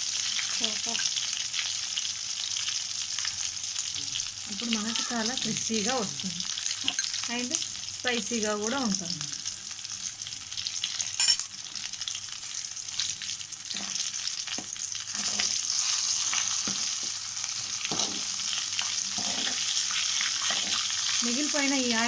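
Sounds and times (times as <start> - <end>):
chicken sizzling in hot oil: 0.0 - 22.0.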